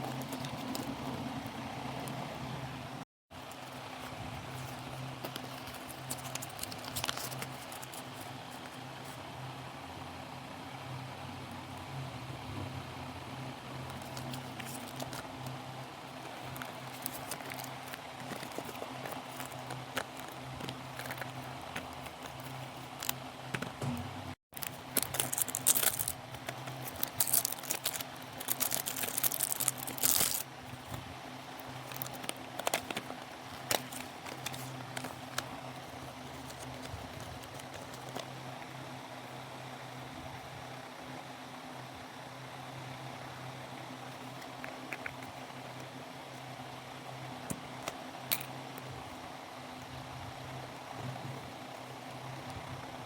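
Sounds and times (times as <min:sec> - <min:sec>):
packaging crinkling and rustling: 0:00.0 - 0:01.2, 0:03.4 - 0:09.2, 0:13.9 - 0:23.8, 0:24.5 - 0:38.6
steady low hum: 0:00.0 - 0:53.0.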